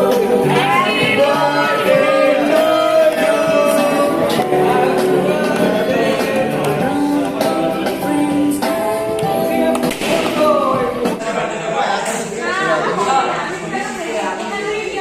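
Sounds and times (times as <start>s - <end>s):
layered singing voices: 0.0s - 11.2s.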